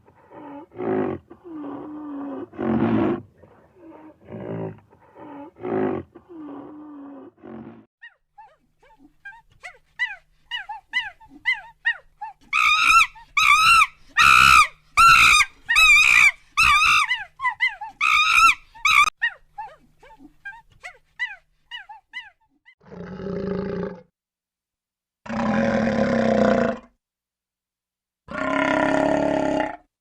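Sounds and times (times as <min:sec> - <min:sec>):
animal growl: 0:00.0 - 0:07.9, 0:22.8 - 0:24.1, 0:25.3 - 0:27.0, 0:28.3 - 0:29.9.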